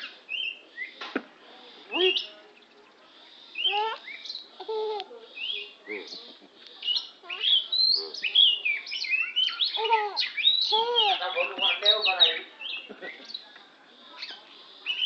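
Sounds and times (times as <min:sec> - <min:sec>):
magpie-robin singing: 0:00.0 - 0:01.0, 0:02.0 - 0:02.8, 0:03.5 - 0:04.5, 0:05.3 - 0:13.5, 0:14.2 - 0:15.0.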